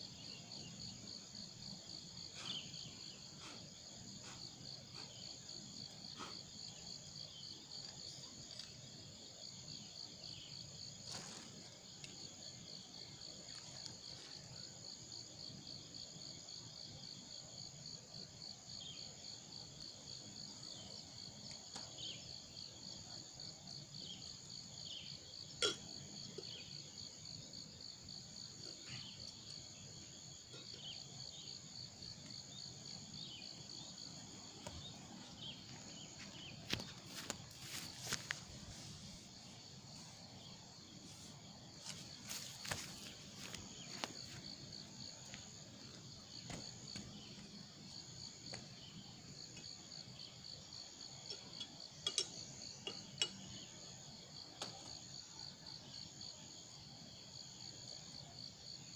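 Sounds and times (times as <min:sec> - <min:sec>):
insects trilling: 0:00.0 - 0:58.9.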